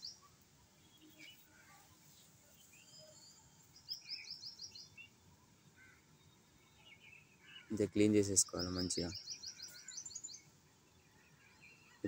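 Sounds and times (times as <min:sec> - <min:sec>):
small birds chirping: 0:00.0 - 0:12.0.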